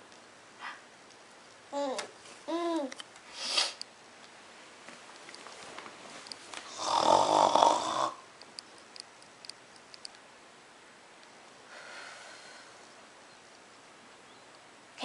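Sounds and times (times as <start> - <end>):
person snoring: 6.7 - 8.2.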